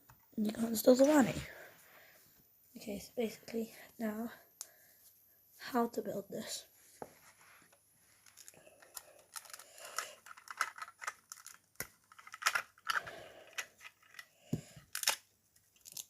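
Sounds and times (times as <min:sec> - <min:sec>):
plastic bricks clicking and rattling: 0:08.2 - 0:15.2.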